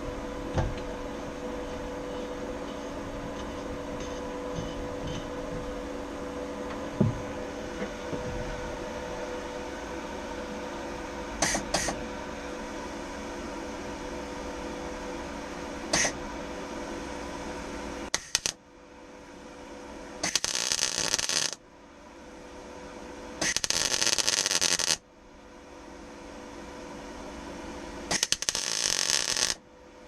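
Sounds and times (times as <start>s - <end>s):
welder steady hum: 0.0s - 30.0s
welding arc crackling: 15.9s - 16.2s, 18.1s - 18.6s, 20.2s - 21.6s, 23.4s - 25.0s, 28.1s - 29.6s.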